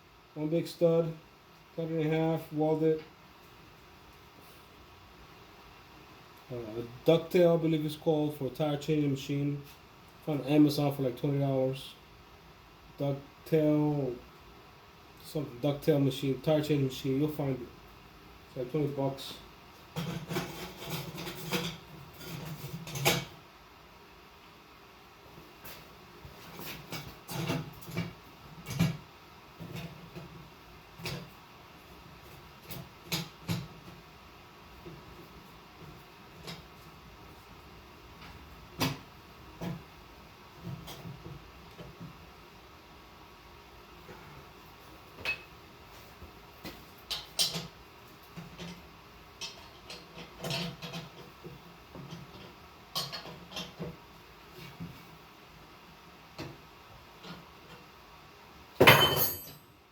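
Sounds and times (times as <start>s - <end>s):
metal tools clicking and clanking: 58.8s - 59.7s.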